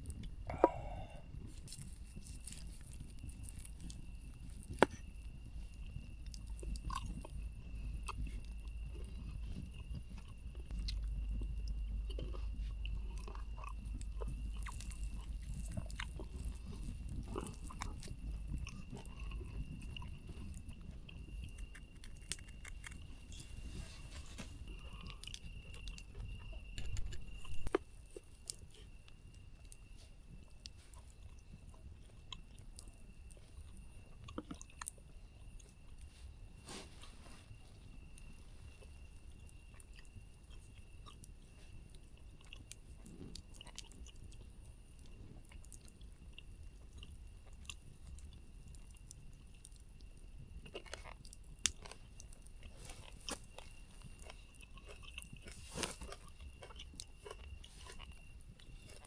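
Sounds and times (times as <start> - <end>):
faint steady high tone: 0.0 - 34.2
chewing and crunching food: 0.0 - 59.0.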